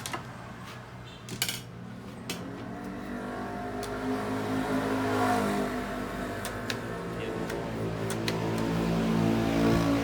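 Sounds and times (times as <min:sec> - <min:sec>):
vehicle engine passing by: 0:02.4 - 0:10.0.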